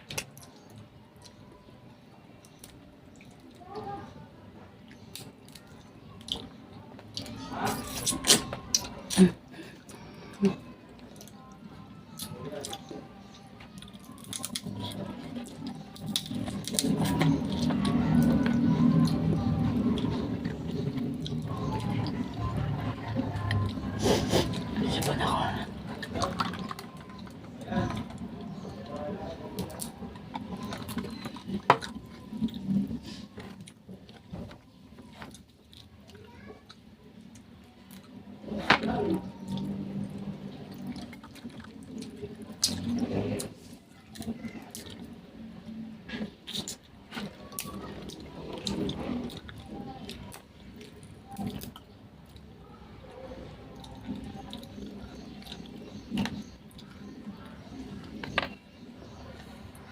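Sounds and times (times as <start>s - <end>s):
wet chewing and smacking: 40.7s - 52.6s, 53.5s - 58.6s.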